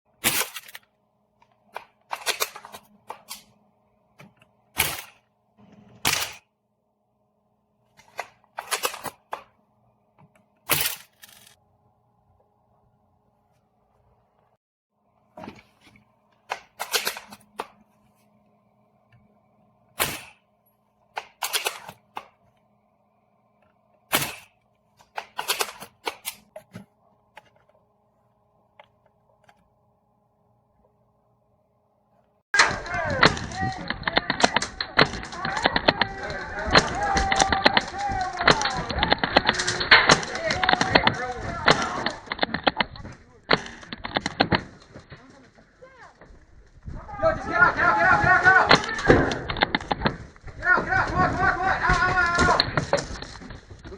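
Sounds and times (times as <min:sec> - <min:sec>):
faint steady hum: 0:00.8 - 0:25.2
sharp mechanical clicks: 0:21.1 - 0:22.4, 0:24.1 - 0:26.5.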